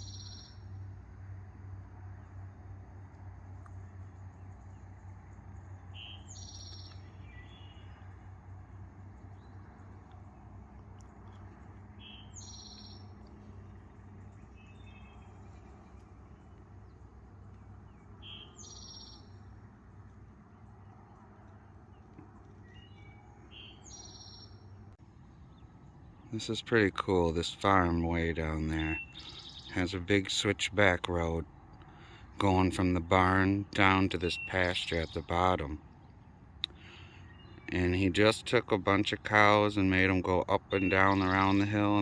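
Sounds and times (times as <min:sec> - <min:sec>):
faint low hum: 0:00.0 - 0:42.0
songbird singing: 0:00.0 - 0:42.0.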